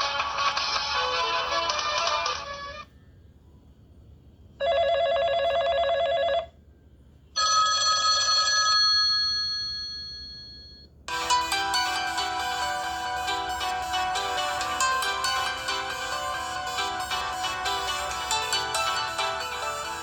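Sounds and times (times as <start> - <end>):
electronic telephone bell trill: 7.4 - 20.0
bell-like ringtone chime: 8.9 - 20.0.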